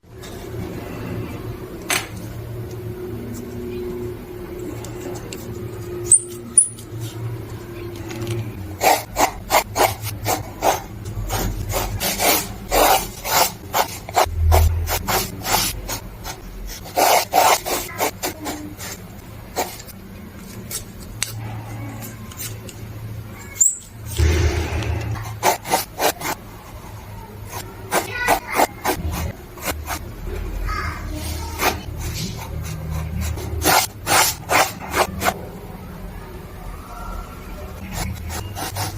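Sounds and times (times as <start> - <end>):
drawing tool scratching paper: 8.8 - 20.0, 25.2 - 26.4, 27.5 - 30.1, 31.2 - 35.4, 37.8 - 38.9.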